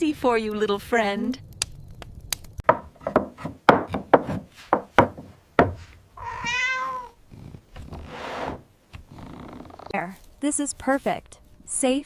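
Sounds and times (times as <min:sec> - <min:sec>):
wood knocks and taps: 0:02.6 - 0:05.8
cat meowing: 0:06.2 - 0:07.2.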